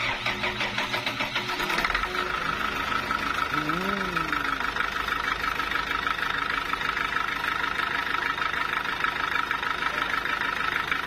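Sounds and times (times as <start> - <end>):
sawmill saw droning: 0.0 - 11.0.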